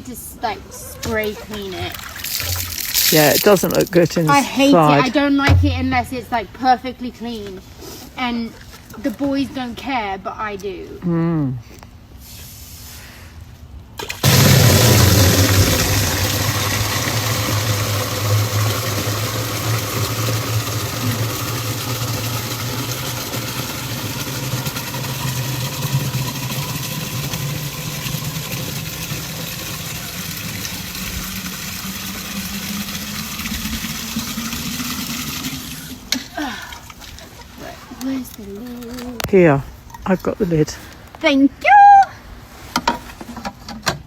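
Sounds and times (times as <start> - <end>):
water jet hissing: 0.1 - 4.8, 14.0 - 36.2
pressure washer motor hum: 1.0 - 4.6, 14.0 - 36.2.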